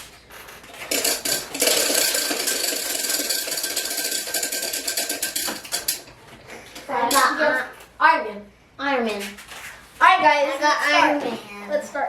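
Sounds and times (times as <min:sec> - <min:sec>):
spinning wheel clicking rapidly: 0:00.9 - 0:06.1.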